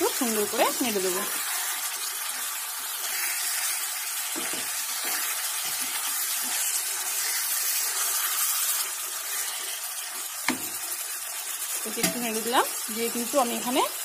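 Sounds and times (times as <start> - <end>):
chicken sizzling in a pan: 0.0 - 14.0
spoon scraping a pan: 3.0 - 11.1.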